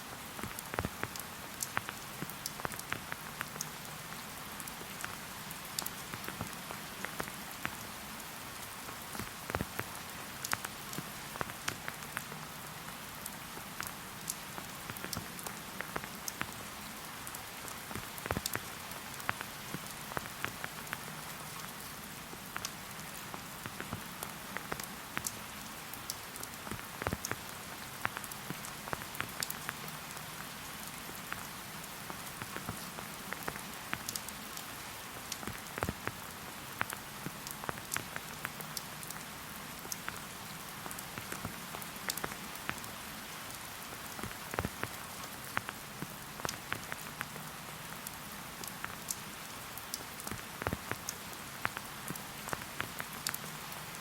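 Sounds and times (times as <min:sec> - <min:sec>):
rain falling in forest: 0:00.0 - 0:54.0
raindrops striking close by: 0:00.0 - 0:54.0.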